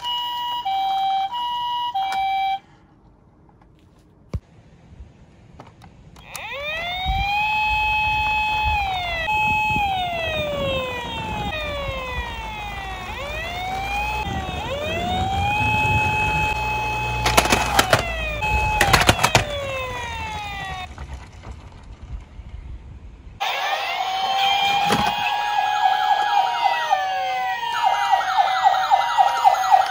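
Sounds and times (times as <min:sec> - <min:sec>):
toy siren wails: 0:00.0 - 0:02.6, 0:06.2 - 0:20.9, 0:23.4 - 0:29.9
toy cars rolling: 0:05.6 - 0:26.2
clattering clicks: 0:17.2 - 0:19.9.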